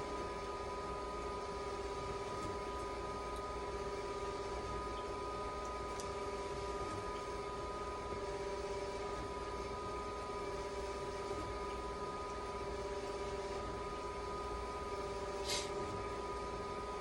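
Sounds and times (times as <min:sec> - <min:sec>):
machine hum: 0:00.0 - 0:17.0
short hiss: 0:15.4 - 0:15.8.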